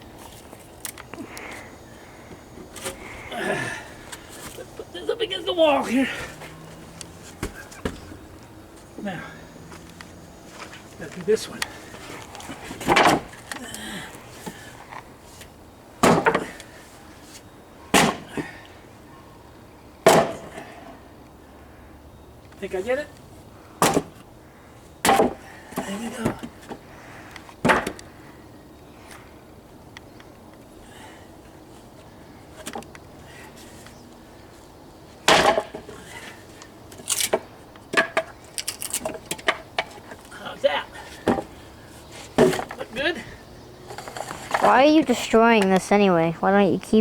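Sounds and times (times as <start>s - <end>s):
wooden parts knocking together: 12.7s - 13.6s, 25.0s - 26.8s, 35.3s - 36.0s, 37.0s - 40.3s, 41.2s - 41.6s, 42.4s - 42.9s.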